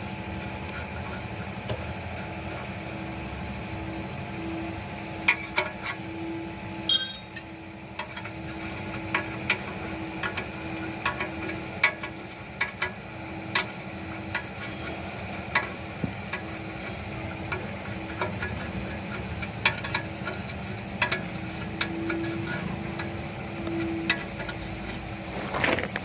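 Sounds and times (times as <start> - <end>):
steady low hum: 0.0 - 26.0
hand tools clinking on metal: 6.9 - 7.6.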